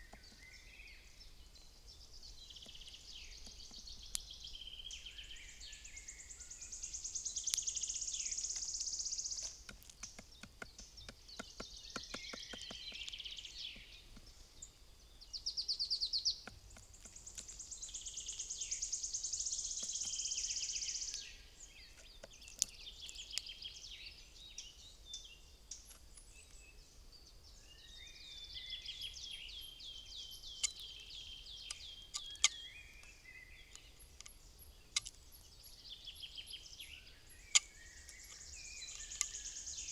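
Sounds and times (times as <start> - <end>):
songbirds singing and calling: 0.0 - 39.9
sharp taps and clicks: 9.4 - 14.3, 16.4 - 17.6, 22.0 - 22.8.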